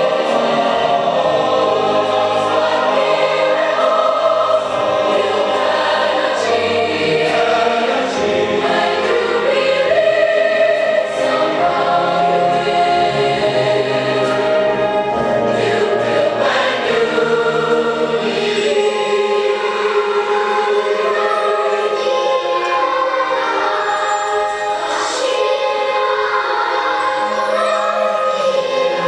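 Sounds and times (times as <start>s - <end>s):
choir singing: 0.0s - 29.0s.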